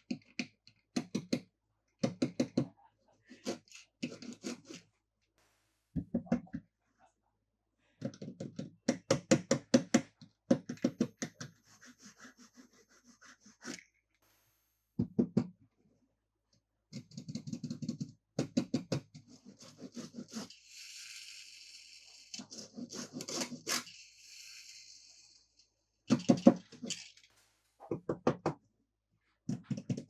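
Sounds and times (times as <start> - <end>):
rapid tapping on toys: 17.0 - 20.6, 26.1 - 28.6, 29.5 - 30.0.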